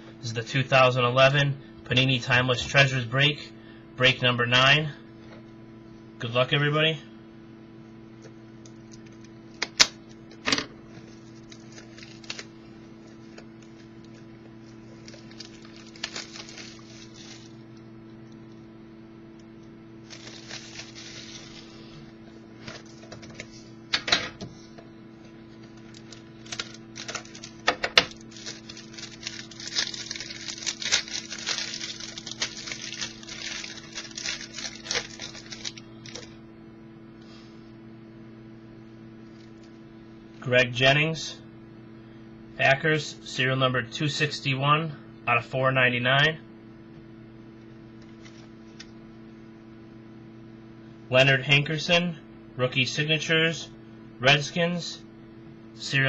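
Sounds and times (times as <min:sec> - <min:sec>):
electrical hum: 0:00.0 - 0:56.0
packaging crinkling: 0:10.9 - 0:17.8, 0:20.0 - 0:23.5, 0:25.6 - 0:36.4.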